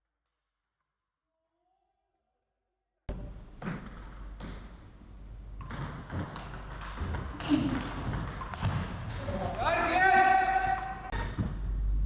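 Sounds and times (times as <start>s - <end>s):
low hall hum: 3.1s - 12.0s
ball bouncing on table: 5.6s - 9.7s.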